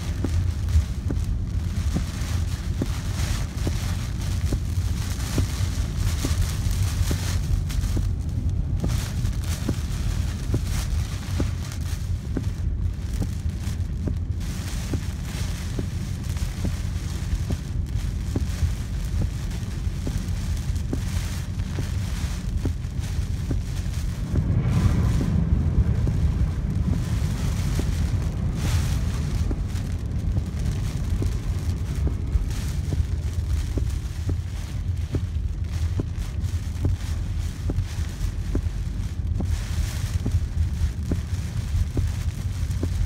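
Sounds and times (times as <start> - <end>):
low road rumble: 0.0 - 43.0
rain hissing: 0.0 - 43.0
wind: 0.0 - 43.0
light ticks: 0.2 - 24.5.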